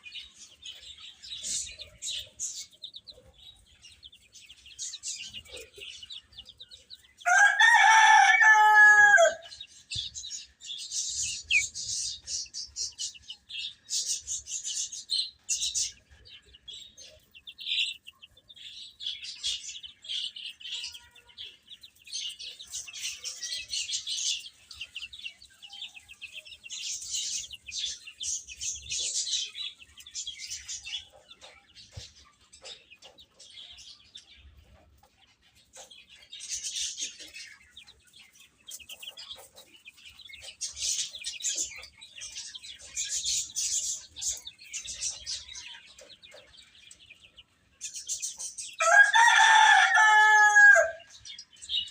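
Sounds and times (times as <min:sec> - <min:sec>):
chicks peeping: 0:00.0 - 0:51.9
chicken drawn-out call: 0:07.2 - 0:09.5, 0:48.8 - 0:51.1.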